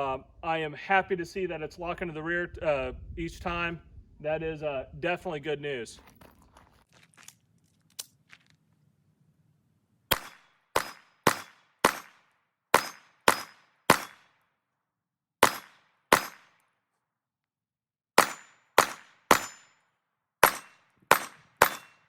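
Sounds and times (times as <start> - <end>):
pistol shots: 10.1 - 14.3, 15.4 - 16.6, 18.2 - 19.7, 20.4 - 22.0.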